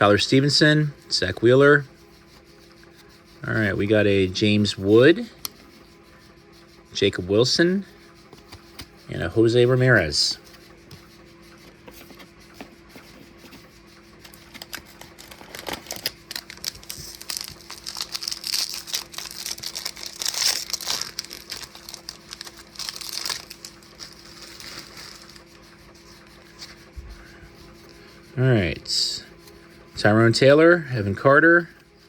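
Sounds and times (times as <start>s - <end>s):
foil wrapper crinkling: 14.6s - 25.5s.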